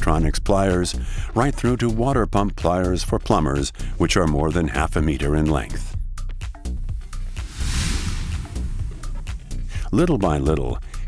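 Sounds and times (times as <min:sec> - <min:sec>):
hiss: 0:06.7 - 0:09.9.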